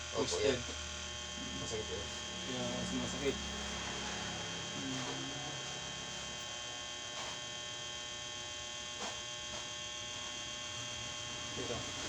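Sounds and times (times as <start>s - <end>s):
electrical hum: 0.0s - 12.0s.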